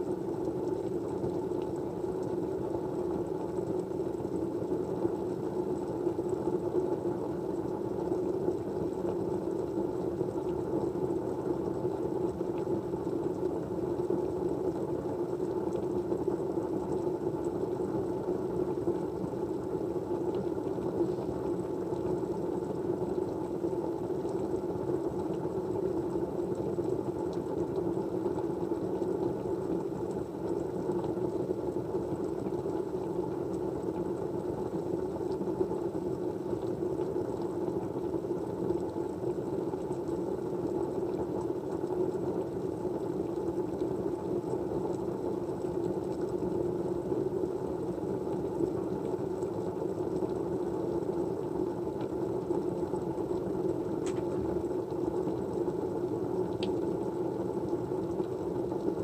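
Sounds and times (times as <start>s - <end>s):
steady white noise: 0.0s - 59.0s
faint ticks: 56.5s - 56.8s.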